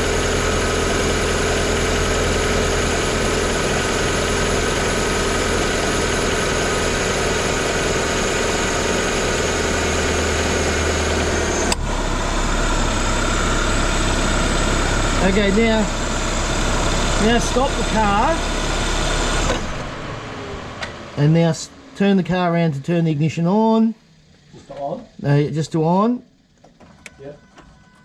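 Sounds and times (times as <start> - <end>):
car engine idling: 0.0 - 27.0.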